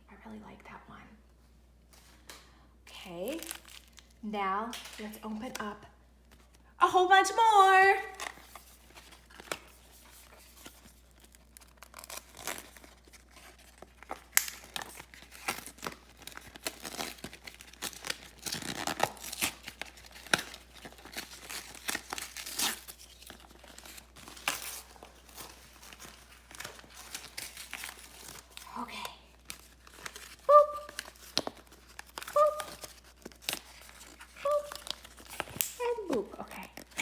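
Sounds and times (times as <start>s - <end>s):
plastic wrappers crinkling: 3.1s - 6.7s, 8.0s - 37.0s.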